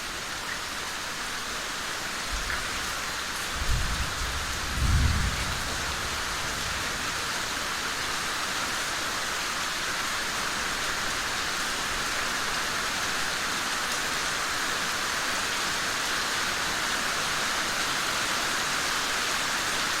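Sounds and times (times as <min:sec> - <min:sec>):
steady rain falling: 0:00.0 - 0:20.0
low thunder rumble: 0:03.5 - 0:07.7.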